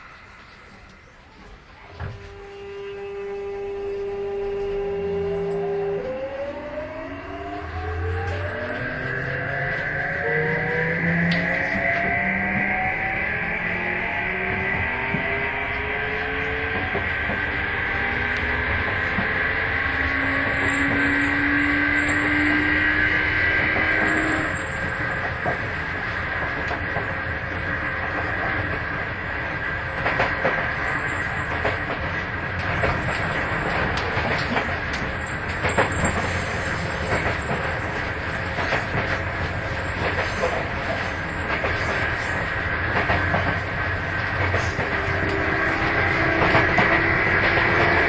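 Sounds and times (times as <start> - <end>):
electric train motor whine: 0.0 - 48.0
wheels clicking over rail joints: 29.7 - 48.0.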